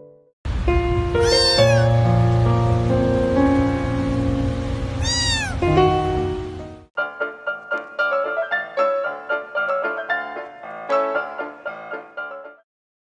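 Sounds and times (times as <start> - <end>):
background music: 0.0 - 12.6
cat meowing: 1.2 - 2.0, 5.0 - 5.8.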